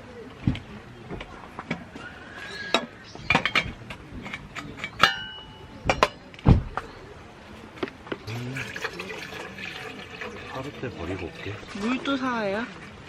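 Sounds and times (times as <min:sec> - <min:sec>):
cookware clinking and knocking: 0:02.7 - 0:06.2
heavy low thump: 0:06.4 - 0:06.8.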